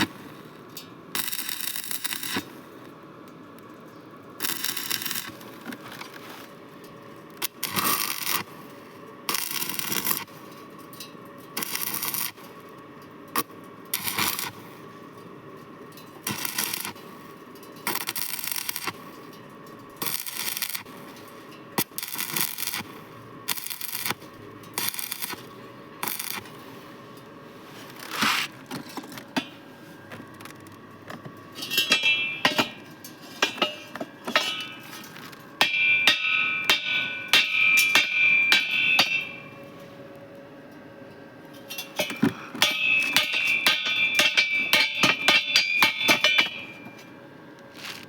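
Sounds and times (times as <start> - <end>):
hammer on steel roofing sheet: 31.7 - 39.6, 42.0 - 47.1.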